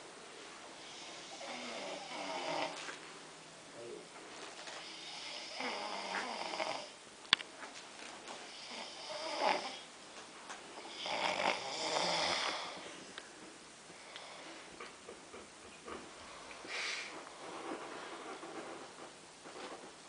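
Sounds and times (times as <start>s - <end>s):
man snoring: 0.8s - 2.8s, 4.8s - 7.0s, 8.5s - 9.9s, 10.8s - 12.9s.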